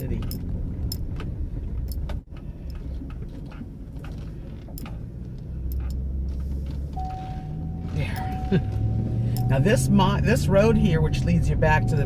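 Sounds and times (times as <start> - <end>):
light clicks and rattles: 0.0 - 7.0
car cabin low rumble: 0.0 - 12.0.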